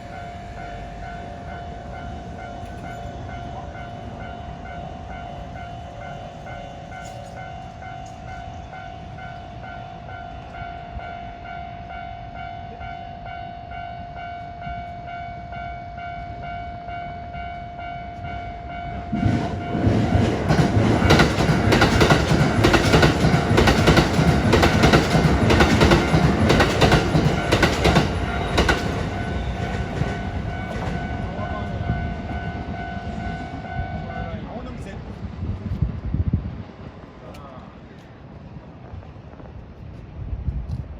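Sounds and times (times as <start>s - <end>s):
level-crossing warning bell: 0.0s - 34.8s
train wheels clattering over rails: 19.1s - 32.5s.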